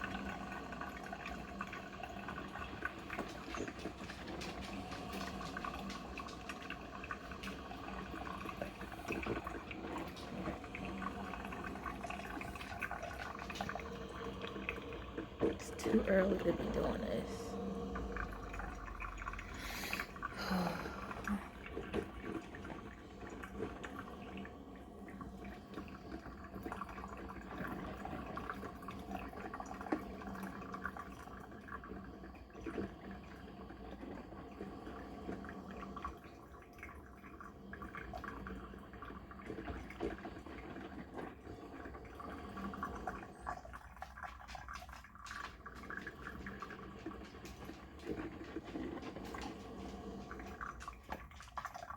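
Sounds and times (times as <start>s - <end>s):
water dripping into pot: 0.0s - 33.1s, 42.1s - 49.5s
coffee maker gurgling and sputtering: 0.0s - 51.9s.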